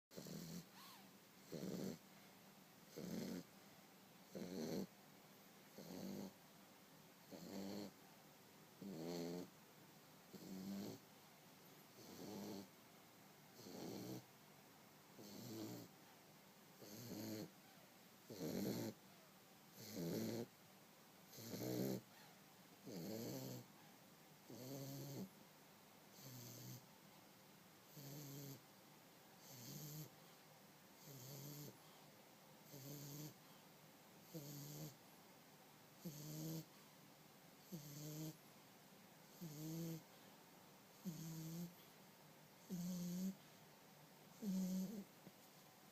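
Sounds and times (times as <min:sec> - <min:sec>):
puppy snoring: 0:00.1 - 0:02.1, 0:02.8 - 0:03.5, 0:04.2 - 0:05.0, 0:05.7 - 0:06.4, 0:07.2 - 0:08.0, 0:08.8 - 0:09.6, 0:10.3 - 0:11.1, 0:11.7 - 0:12.8, 0:13.5 - 0:14.3, 0:15.1 - 0:16.1, 0:16.8 - 0:19.0, 0:19.7 - 0:20.5, 0:21.3 - 0:25.4, 0:26.1 - 0:26.9, 0:27.8 - 0:28.7, 0:29.4 - 0:30.2, 0:31.0 - 0:31.9, 0:32.6 - 0:33.5, 0:34.2 - 0:35.0, 0:36.0 - 0:36.8, 0:37.6 - 0:38.4, 0:39.2 - 0:40.2, 0:40.9 - 0:41.9, 0:42.6 - 0:43.5, 0:44.3 - 0:45.2.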